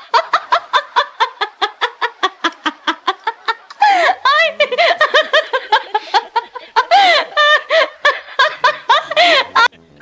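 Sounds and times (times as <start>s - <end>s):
person laughing hard: 0.0s - 9.7s.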